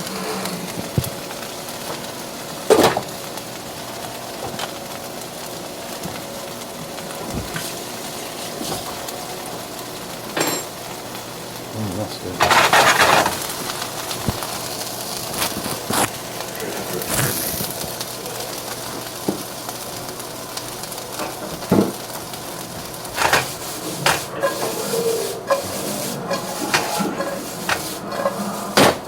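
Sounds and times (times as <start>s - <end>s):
food sizzling in a hot pan: 0.0s - 29.0s
utensils clicking against cookware: 23.2s - 29.0s.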